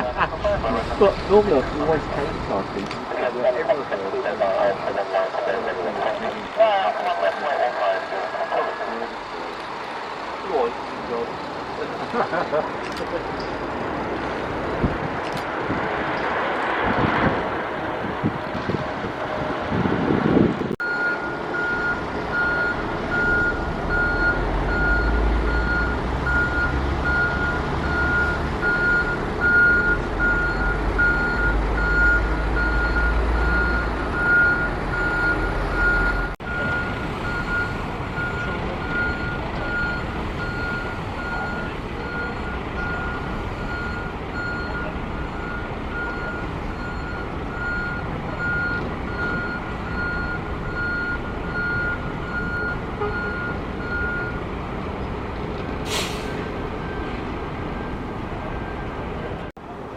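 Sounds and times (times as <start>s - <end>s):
wind noise: 14.4s - 20.8s
vehicle reversing alarm beeping: 20.8s - 54.5s, 56.0s - 59.5s.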